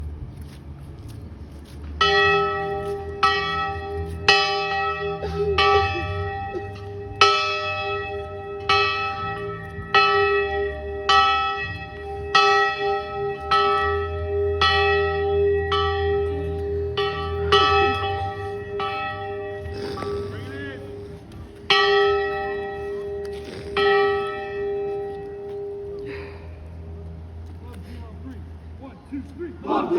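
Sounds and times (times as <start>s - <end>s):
large bell ringing: 2.0s - 21.1s, 21.7s - 26.1s.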